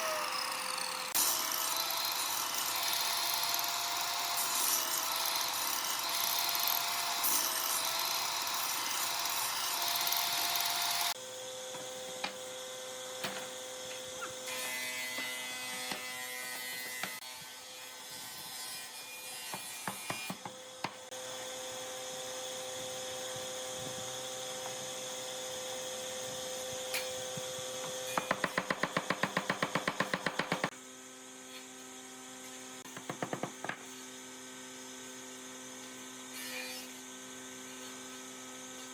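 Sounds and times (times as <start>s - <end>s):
power tool running loudly: 0.0s - 17.3s.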